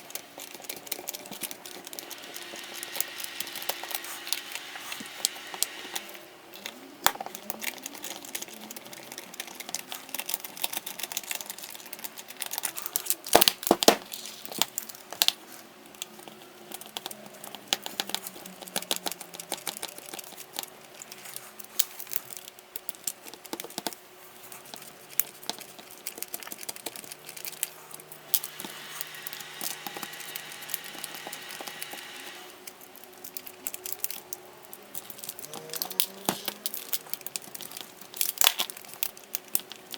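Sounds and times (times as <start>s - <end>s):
plastic housing clicking and crackling: 0.0s - 24.0s, 24.6s - 39.9s.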